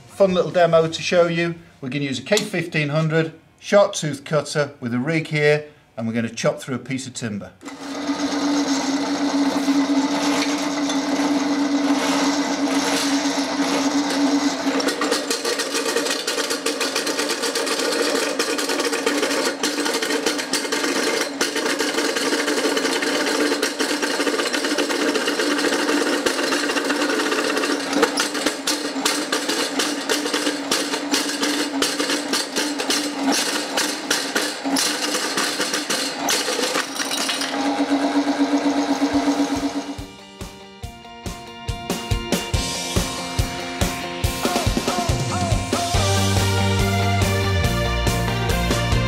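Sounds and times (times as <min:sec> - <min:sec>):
cutter clattering on wood: 0:07.6 - 0:40.0
drain cleaning machine motor hum: 0:07.6 - 0:49.0.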